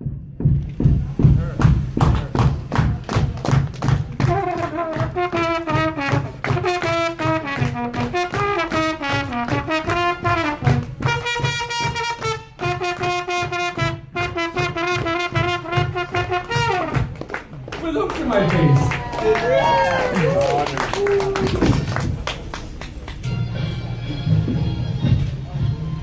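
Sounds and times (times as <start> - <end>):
backing track with steady beat: 0.0 - 26.0
trumpet playing a melody: 4.2 - 17.2, 23.2 - 25.0.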